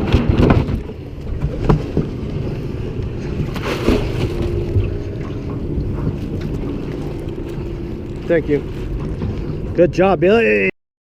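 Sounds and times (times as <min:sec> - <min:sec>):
boat motor running: 0:00.0 - 0:10.7.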